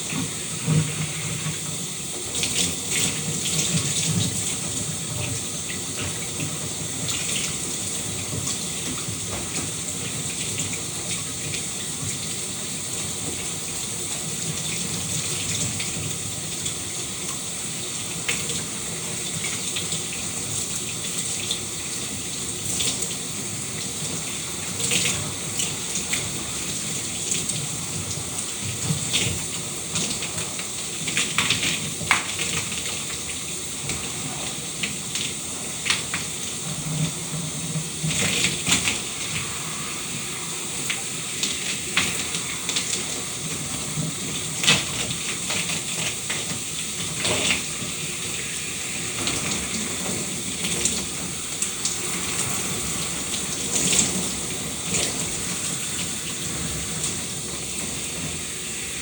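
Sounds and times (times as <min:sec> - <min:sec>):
shower spraying water hiss: 0:00.0 - 0:59.0
water splashing on surface: 0:18.0 - 0:59.0.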